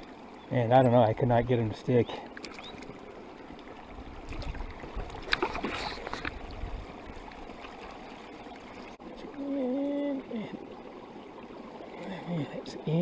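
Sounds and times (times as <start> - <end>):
lake water lapping: 0.0 - 13.0
short clicks and splashes: 2.4 - 3.0, 4.3 - 6.4
wind on microphone: 3.9 - 7.3.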